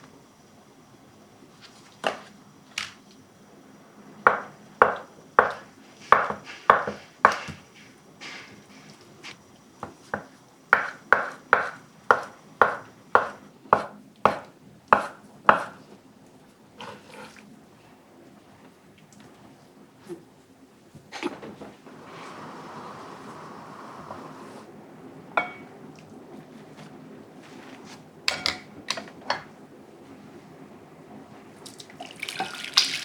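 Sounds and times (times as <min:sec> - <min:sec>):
knife chopping on cutting board: 0:04.3 - 0:07.7, 0:10.2 - 0:15.8.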